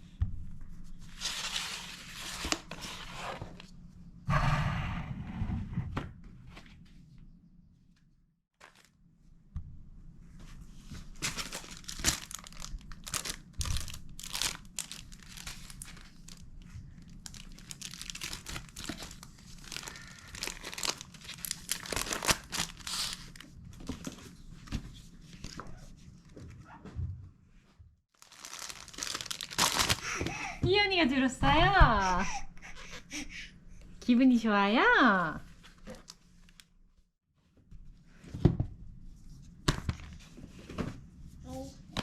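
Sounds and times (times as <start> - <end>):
material crinkling and rustling: 8.6 - 9.0, 10.8 - 26.7, 28.1 - 30.2, 35.5 - 36.7.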